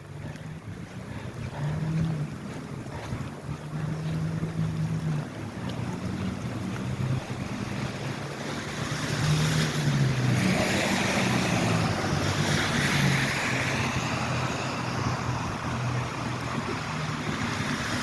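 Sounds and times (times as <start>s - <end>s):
low wavering engine hum: 0.0s - 18.0s
wind on microphone: 0.0s - 18.0s
steady rain: 3.6s - 18.0s.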